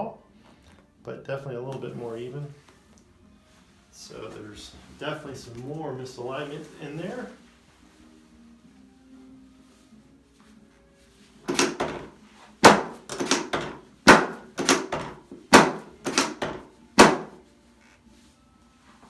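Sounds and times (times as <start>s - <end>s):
sharp wooden knocks with rattle: 11.5s - 17.4s.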